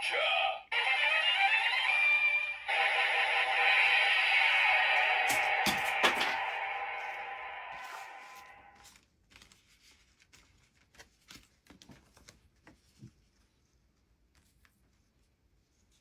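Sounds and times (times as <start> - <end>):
toy belt electronic sound effect: 0.7 - 8.7.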